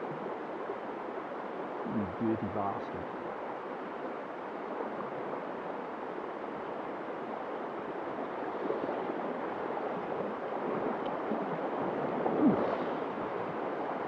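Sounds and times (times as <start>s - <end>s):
stream rushing: 0.0s - 14.0s.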